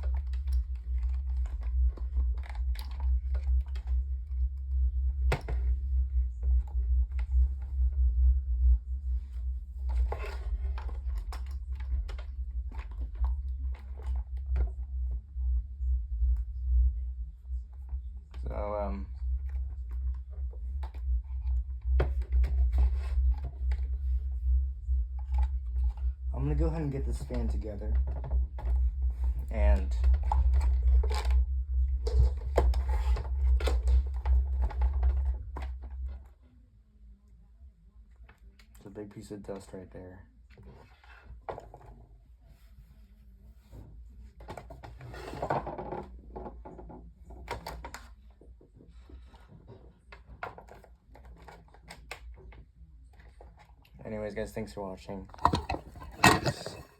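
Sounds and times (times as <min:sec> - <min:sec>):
low rumble: 0:00.0 - 0:38.7, 0:52.0 - 0:56.9
low hum: 0:00.0 - 0:56.9
plastic parts clicking and knocking: 0:32.1 - 0:36.3, 0:44.4 - 0:53.9, 0:55.3 - 0:56.9
fan parts clicking and scraping: 0:53.2 - 0:56.9.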